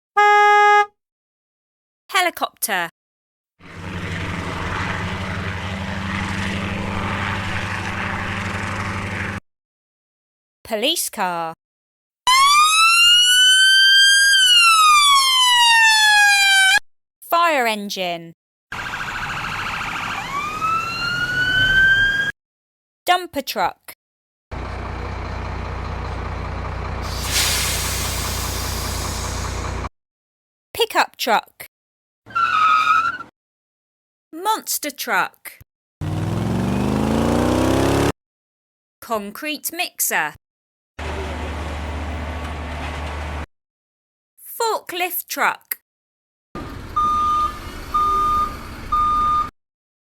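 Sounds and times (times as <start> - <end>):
helicopter rotor chop: 3.6 - 9.4, 36.0 - 38.1
truck engine rumbling: 3.6 - 9.4, 24.6 - 29.9, 41.0 - 43.4, 46.6 - 49.4
loud hiss: 27.0 - 29.8.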